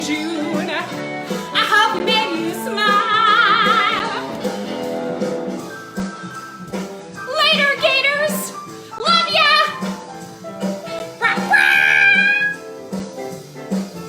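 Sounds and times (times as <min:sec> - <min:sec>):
woman singing with vibrato: 0:00.0 - 0:04.4
recorded accompaniment with beat: 0:00.0 - 0:14.0.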